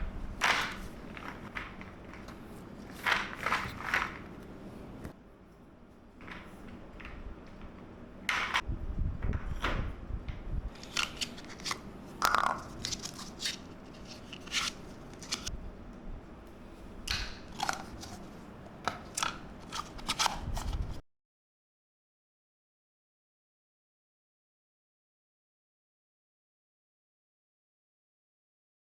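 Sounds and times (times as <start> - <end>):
plastic parts clicking and knocking: 10.7 - 15.5, 17.1 - 20.9.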